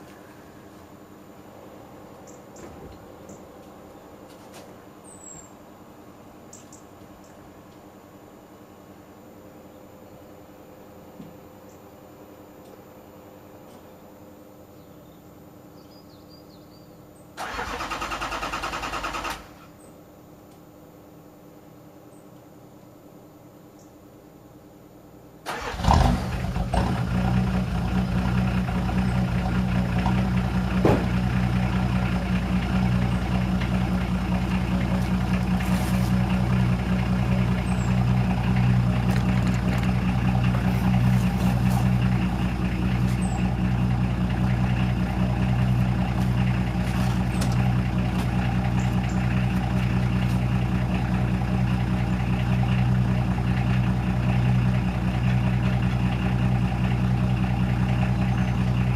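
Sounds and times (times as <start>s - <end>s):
diesel car engine starting and idling: 17.3s - 19.9s, 25.4s - 58.9s.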